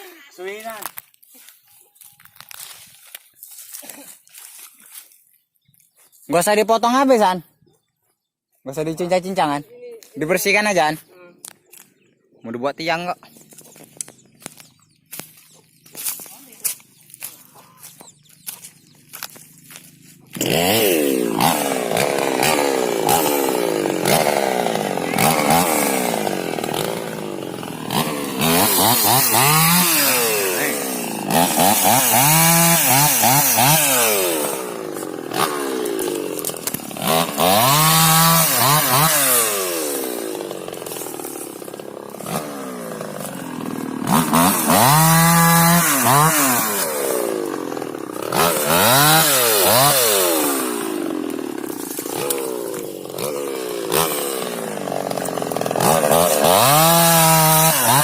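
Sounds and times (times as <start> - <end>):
chainsaw revving and cutting wood: 13.3 - 58.0.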